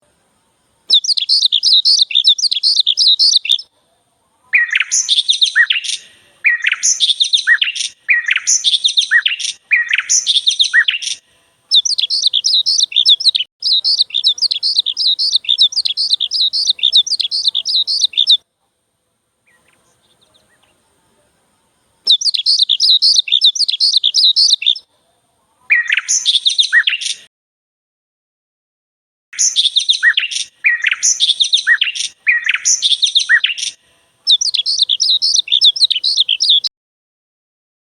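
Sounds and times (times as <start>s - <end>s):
high-pitched chirping calls: 0.9s - 3.7s, 4.6s - 18.4s, 22.1s - 24.9s, 25.7s - 27.2s, 29.4s - 36.7s.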